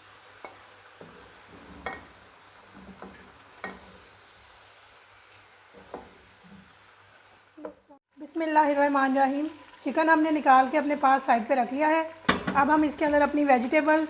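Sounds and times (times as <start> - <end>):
chicken sizzling in oil: 0.0 - 14.0
spoon scraping and knocking pan: 0.4 - 4.2, 5.7 - 6.7, 12.2 - 12.8.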